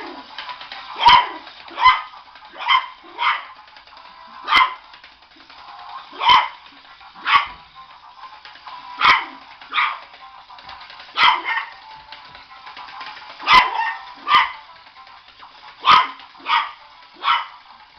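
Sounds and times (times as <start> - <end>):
dog barking: 1.0 - 3.5, 4.5 - 4.8, 6.2 - 6.6, 7.2 - 7.6, 9.0 - 10.0, 11.2 - 11.7, 13.4 - 14.6, 15.8 - 17.5.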